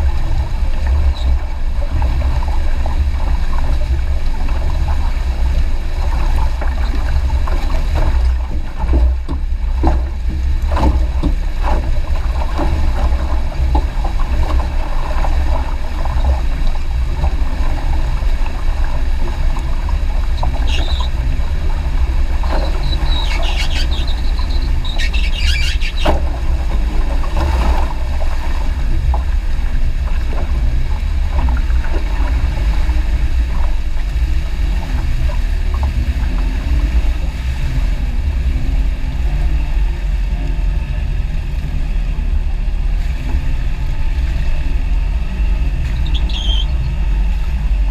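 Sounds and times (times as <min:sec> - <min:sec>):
heavy low rumble on microphone: 0:00.0 - 0:47.9
water sloshing: 0:00.0 - 0:47.9
short high squeals: 0:20.6 - 0:21.1, 0:22.6 - 0:26.1, 0:45.9 - 0:47.3.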